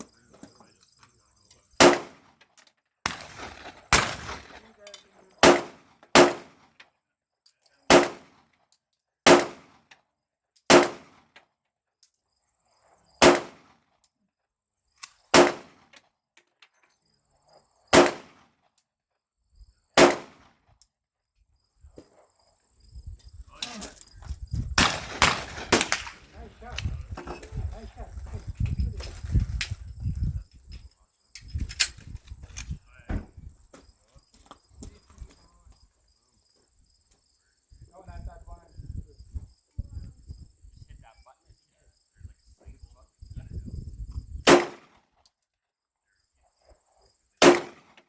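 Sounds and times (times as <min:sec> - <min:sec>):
pistol shots: 0:01.8 - 0:02.3, 0:03.1 - 0:04.8, 0:05.4 - 0:06.8, 0:07.9 - 0:08.4, 0:09.2 - 0:09.8, 0:10.7 - 0:11.3, 0:13.2 - 0:13.8, 0:15.3 - 0:15.9, 0:17.9 - 0:18.5, 0:20.0 - 0:20.5, 0:24.8 - 0:26.4, 0:44.4 - 0:45.0, 0:47.4 - 0:48.0.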